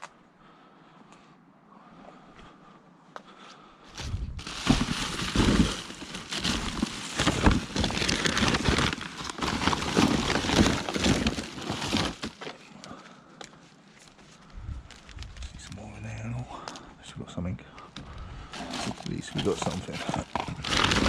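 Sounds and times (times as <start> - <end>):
rustling and crackling: 3.9 - 16.9, 17.8 - 21.0.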